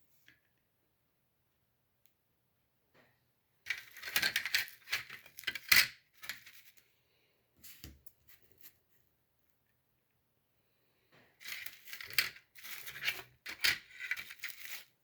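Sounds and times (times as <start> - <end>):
plastic panels clattering: 3.7 - 6.6, 11.4 - 14.8.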